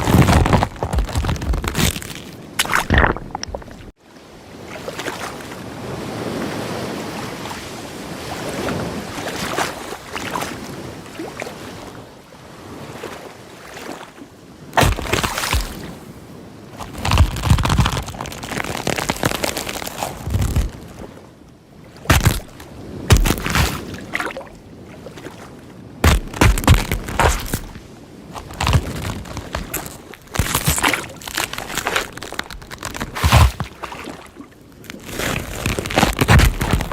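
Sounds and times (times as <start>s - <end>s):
waves washing: 12.6s - 36.9s.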